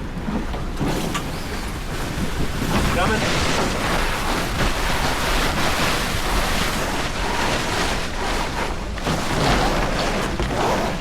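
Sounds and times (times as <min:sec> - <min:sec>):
wind buffeting microphone: 0:00.0 - 0:11.0
water washing along hull: 0:00.1 - 0:11.0.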